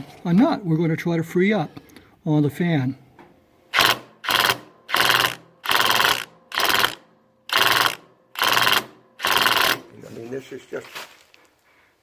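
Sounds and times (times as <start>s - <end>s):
impact wrench hammering: 3.7s - 9.9s.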